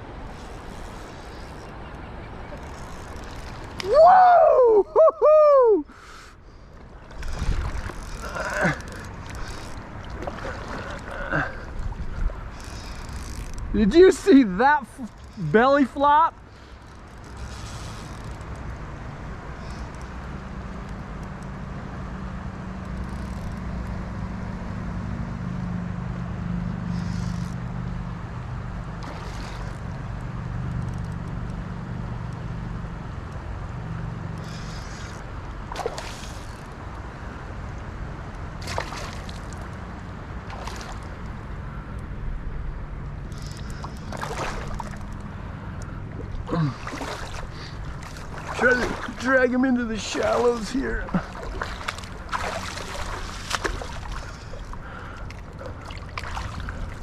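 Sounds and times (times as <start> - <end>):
river water sloshing and gurgling: 0.0 - 57.0
water splashes: 6.6 - 13.2, 28.9 - 30.4, 34.4 - 37.0, 38.4 - 41.5, 43.3 - 57.0
low steady hum: 26.1 - 57.0.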